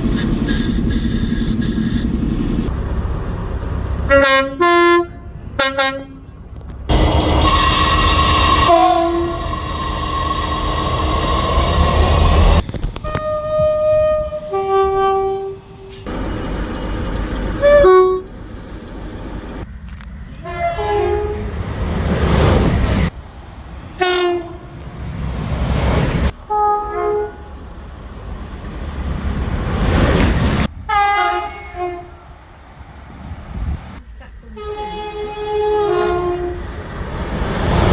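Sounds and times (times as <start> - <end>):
trains rumbling on track: 0.0 - 37.9
two-tone train horn: 4.1 - 6.3, 6.9 - 16.0, 17.6 - 18.3, 20.4 - 21.5, 24.0 - 24.7, 26.4 - 27.6, 30.9 - 32.2, 34.5 - 36.6.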